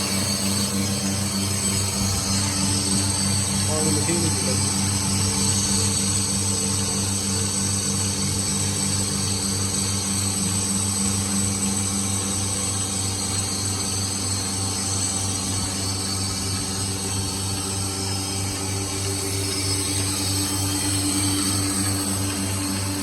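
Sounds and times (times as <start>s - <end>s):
electric machine humming: 0.0s - 23.0s
thin high whine: 0.0s - 23.0s.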